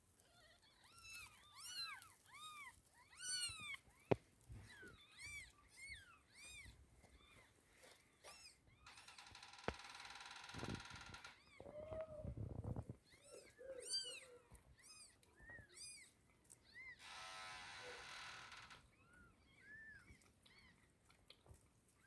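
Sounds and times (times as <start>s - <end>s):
kittens mewing: 0.3s - 7.4s, 10.6s - 17.1s.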